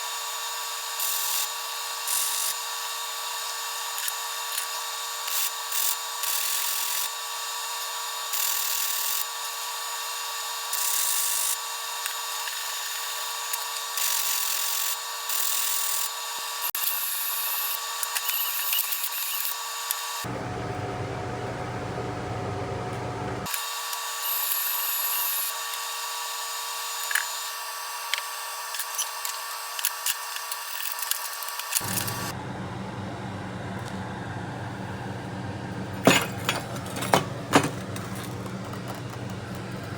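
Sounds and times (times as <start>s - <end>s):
angle grinder whining: 18.1s - 39.9s
disc hissing cutting steel: 28.6s - 32.4s
lower grinder noise: 31.7s - 39.9s.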